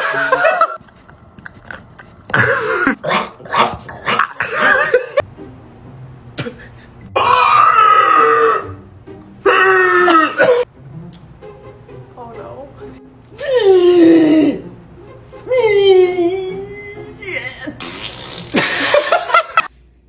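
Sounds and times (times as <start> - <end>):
throaty cough-like vocal noises: 1.7 - 4.8.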